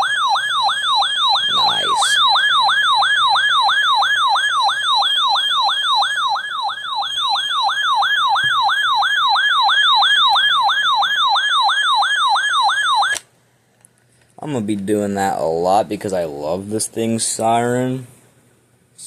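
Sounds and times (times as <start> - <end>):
warbling alert siren: 0.0 - 13.2.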